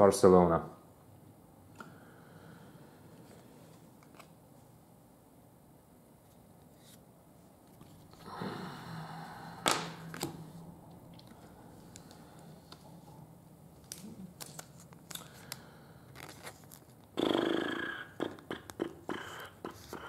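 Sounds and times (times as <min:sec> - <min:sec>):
cards rustling scrape: 0:16.1 - 0:17.0.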